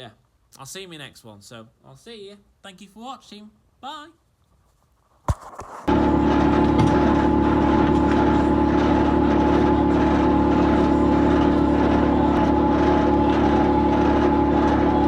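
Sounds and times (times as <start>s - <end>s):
tractor engine running: 5.9s - 15.0s.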